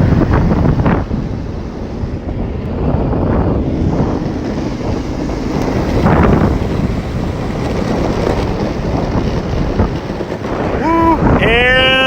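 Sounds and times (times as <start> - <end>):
longboard wheels rolling: 0.0 - 12.0
wind buffeting microphone: 0.0 - 12.0.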